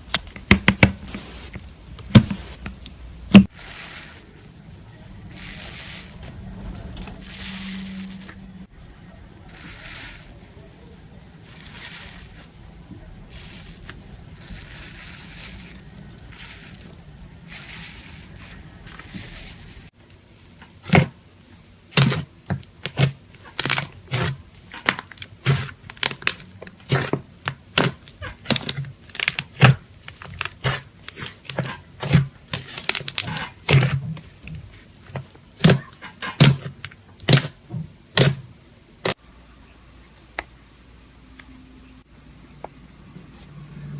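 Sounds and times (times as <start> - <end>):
slime squelching by hand: 5.0 - 8.8.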